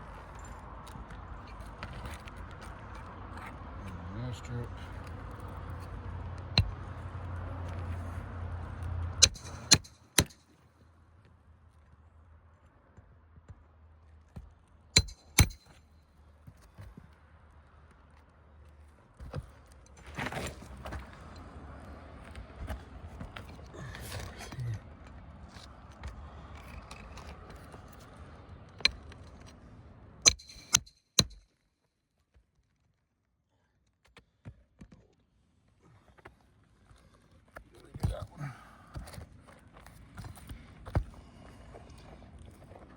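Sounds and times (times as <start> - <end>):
hammer clanging on metal tool: 9.2 - 10.4, 15.0 - 15.8, 30.3 - 31.4.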